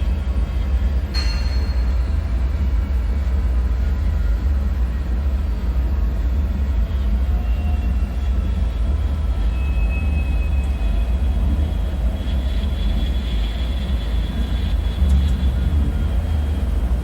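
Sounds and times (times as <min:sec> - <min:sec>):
faint metallic whine: 0:00.8 - 0:05.5.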